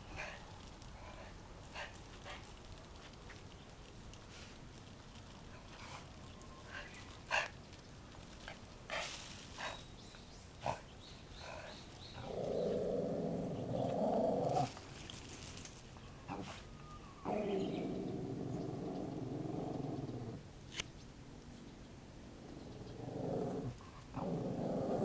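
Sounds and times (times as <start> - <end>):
animal growling: 11.4 - 14.8, 17.2 - 20.4, 22.4 - 25.0.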